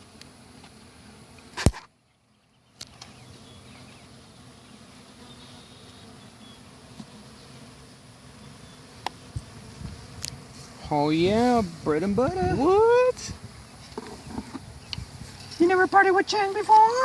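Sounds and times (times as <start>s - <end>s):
honey bees buzzing: 0.0s - 17.0s.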